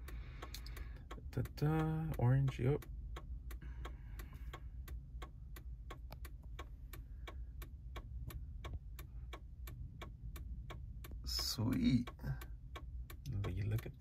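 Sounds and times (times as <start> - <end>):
car indicator clicking: 0.0 - 14.0
low steady rumble: 0.0 - 14.0.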